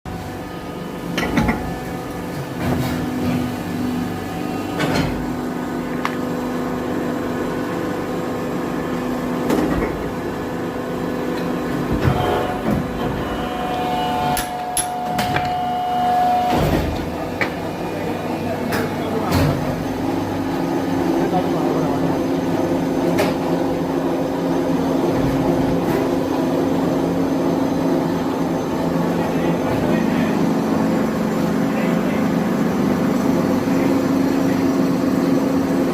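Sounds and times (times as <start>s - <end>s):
machinery humming: 0.1s - 35.9s
machinery drone: 12.0s - 18.6s.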